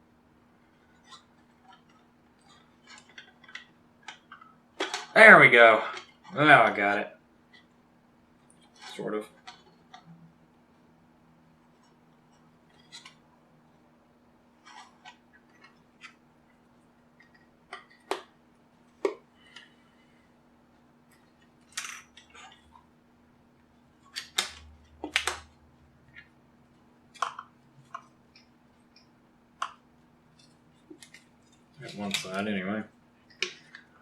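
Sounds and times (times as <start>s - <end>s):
plastic snapping: 24.2s - 25.5s.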